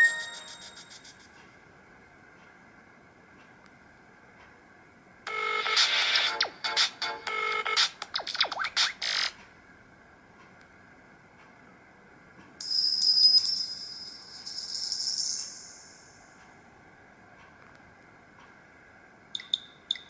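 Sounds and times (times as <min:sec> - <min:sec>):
high bell-like ringing tone: 0:00.0 - 0:01.1, 0:12.6 - 0:16.5.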